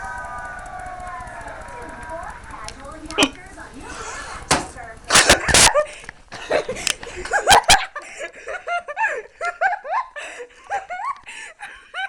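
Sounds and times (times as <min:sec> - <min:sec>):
person giggling: 0:05.2 - 0:12.0.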